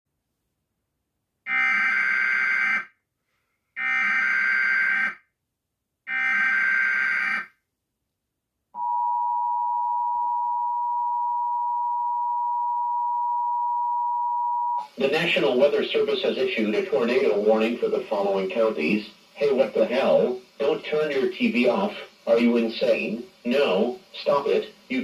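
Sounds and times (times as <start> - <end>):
two-tone attention signal: 8.8 - 14.9.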